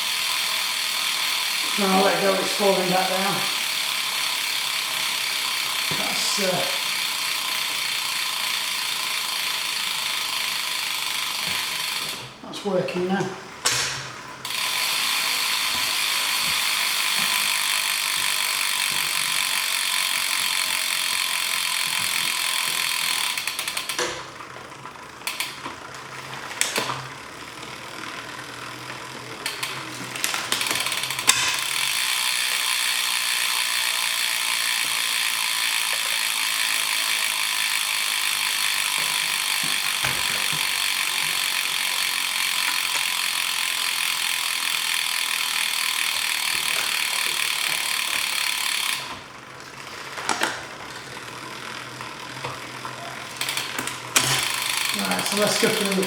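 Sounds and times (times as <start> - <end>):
freewheel ticking rapidly: 0.0 - 12.3, 14.4 - 56.0
bicycle chain running over gears: 0.0 - 13.2, 14.1 - 56.0
scattered clicks: 25.2 - 25.8, 52.4 - 56.0.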